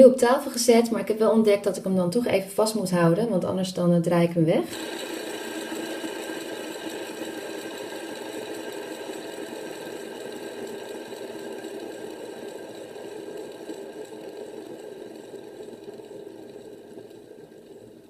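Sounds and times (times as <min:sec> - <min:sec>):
fidget spinner bearing whirring: 0:04.7 - 0:18.0.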